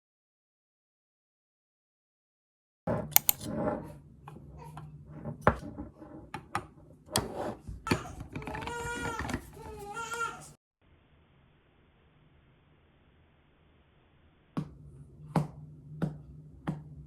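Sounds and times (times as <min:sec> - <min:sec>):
clicks and knocks of handling: 0:03.1 - 0:03.5
baby crying: 0:07.9 - 0:10.6.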